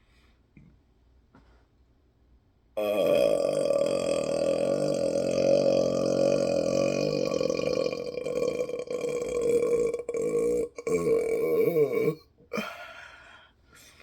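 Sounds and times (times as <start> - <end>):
person burping: 2.8 - 13.1.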